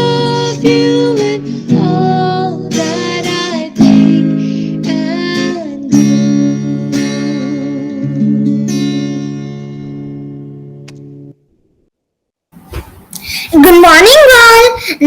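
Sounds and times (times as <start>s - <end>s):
strummed acoustic guitar: 0.0s - 11.3s.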